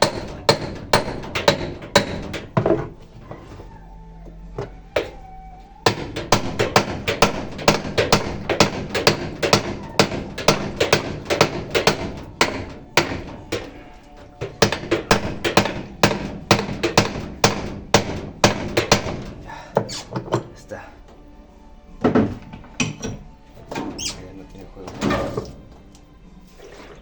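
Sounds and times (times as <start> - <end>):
hammer striking pipe wrench: 0.0 - 2.9, 5.8 - 20.5.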